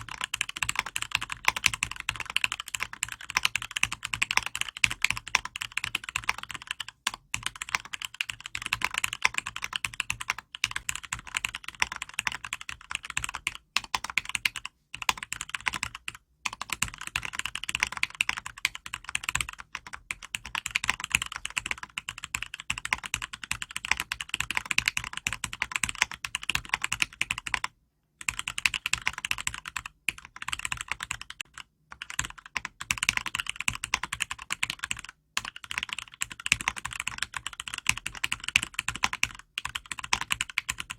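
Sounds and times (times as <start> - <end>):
fast typing on mechanical keyboard: 0.0 - 40.9.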